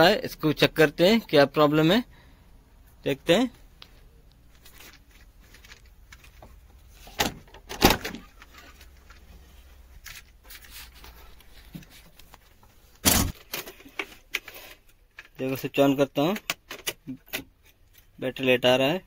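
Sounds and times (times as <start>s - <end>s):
faint clatter and light knocks: 3.8s - 15.4s.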